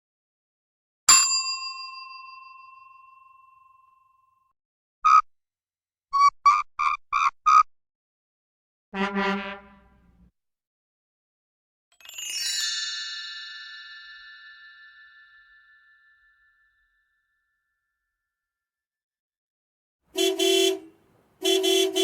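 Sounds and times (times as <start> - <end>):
low buzzy honk: 9.0 - 10.2, 20.2 - 22.0.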